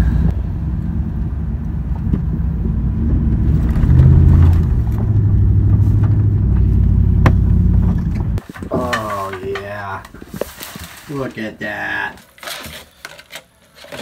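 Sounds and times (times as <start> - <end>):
car engine revving: 0.0 - 8.4.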